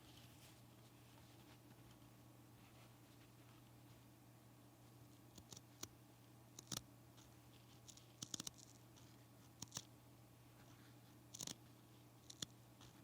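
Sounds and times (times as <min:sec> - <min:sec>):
faint steady hum: 0:00.0 - 0:13.0
scissors snipping: 0:07.8 - 0:08.8, 0:11.3 - 0:11.6, 0:12.2 - 0:13.0.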